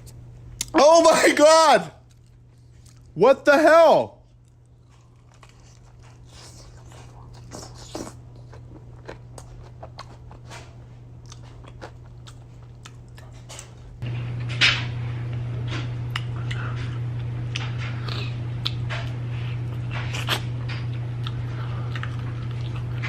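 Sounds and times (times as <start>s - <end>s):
steady low hum: 0.0s - 23.0s
crunching and chewing fried chicken: 2.0s - 3.2s, 4.2s - 14.0s, 15.7s - 23.0s.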